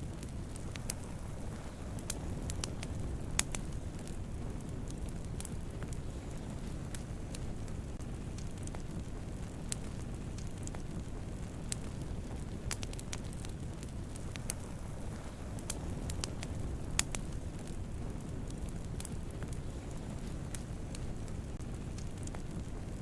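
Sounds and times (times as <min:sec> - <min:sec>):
campfire low rumble: 0:00.0 - 0:23.0
fire crackles and pops: 0:00.0 - 0:23.0.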